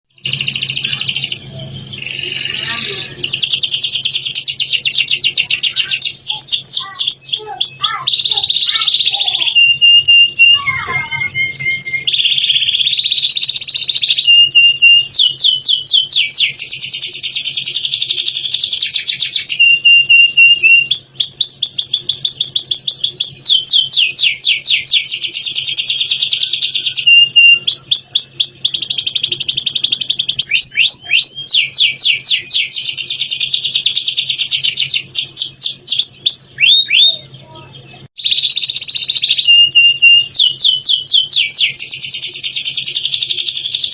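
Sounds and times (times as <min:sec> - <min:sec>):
canary singing in rolling trills: 0:00.1 - 0:43.9.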